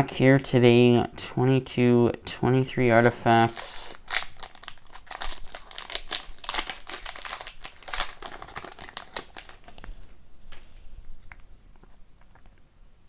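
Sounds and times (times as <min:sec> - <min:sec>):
wrapper tearing and crinkling: 0:03.4 - 0:10.2.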